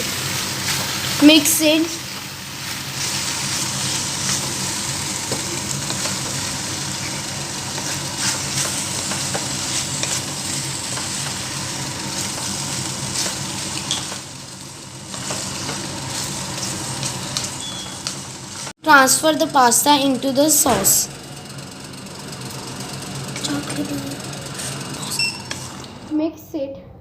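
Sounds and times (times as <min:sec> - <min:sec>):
food sizzling in a pan: 0:00.0 - 0:20.7.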